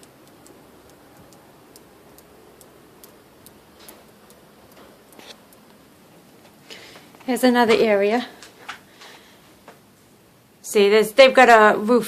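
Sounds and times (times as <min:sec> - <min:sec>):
faint ticking: 0:00.0 - 0:07.3.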